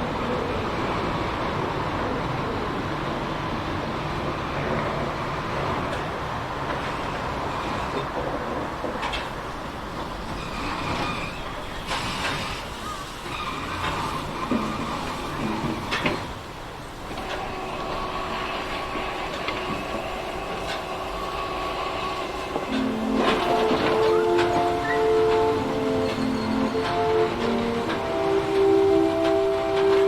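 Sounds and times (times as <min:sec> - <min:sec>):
train clanks and knocks: 0:00.0 - 0:30.0
train rumbling: 0:00.0 - 0:30.0.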